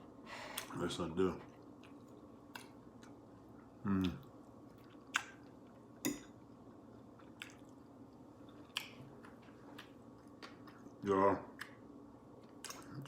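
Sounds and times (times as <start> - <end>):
person chewing food: 1.4 - 13.0
wet mouth smacks: 4.8 - 5.4.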